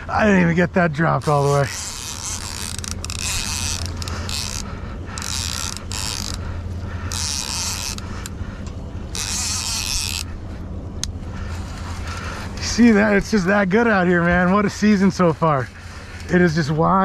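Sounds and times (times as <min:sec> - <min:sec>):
boat engine hum: 0:00.0 - 0:17.0
fishing reel winding: 0:01.2 - 0:08.4, 0:09.1 - 0:10.4, 0:11.0 - 0:13.0.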